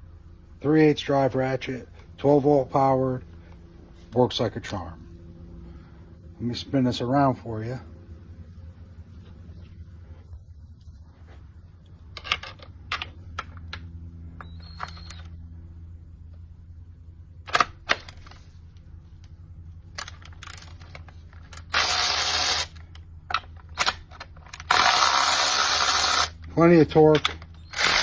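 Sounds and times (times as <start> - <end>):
handling clicks and knocks: 12.1 - 15.2, 26.9 - 27.6
electric ratchet wrench motor: 21.5 - 22.8, 23.8 - 26.4, 27.6 - 28.0.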